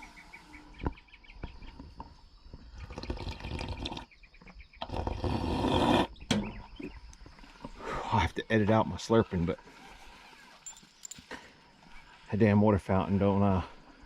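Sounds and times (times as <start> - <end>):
man slurping water: 2.8 - 4.2, 4.8 - 6.2.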